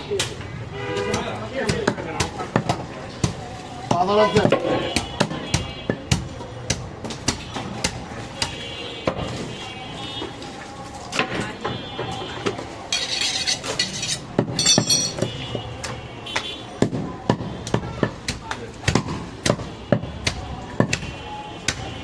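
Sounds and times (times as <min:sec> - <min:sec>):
cleaver chopping meat: 0:01.1 - 0:08.5, 0:16.8 - 0:21.1.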